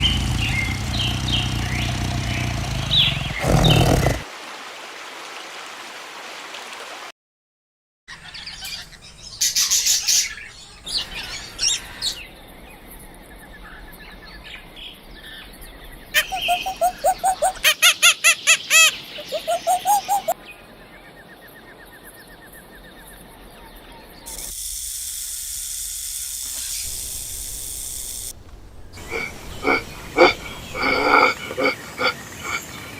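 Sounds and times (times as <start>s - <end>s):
birds chirping: 0.0s - 4.2s, 9.4s - 24.2s, 26.6s - 32.9s
repeated pitched animal calls: 0.0s - 4.2s, 16.2s - 20.4s, 29.0s - 32.8s
outdoor hiss: 0.0s - 7.1s, 24.3s - 30.8s.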